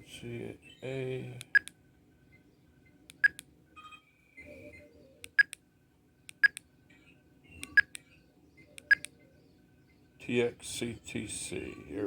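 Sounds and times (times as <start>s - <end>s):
faint clicks and tones: 1.4s - 2.4s, 3.1s - 5.6s, 6.2s - 9.2s
radio keypad beeps: 8.8s - 9.1s.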